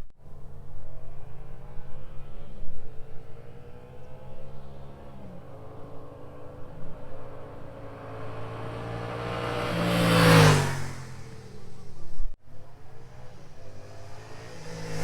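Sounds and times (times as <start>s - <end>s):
motorcycle engine passing by: 1.4s - 15.0s.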